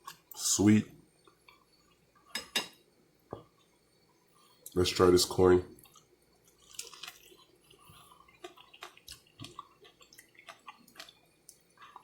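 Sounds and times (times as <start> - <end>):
chewing corn on the cob: 5.8 - 12.0.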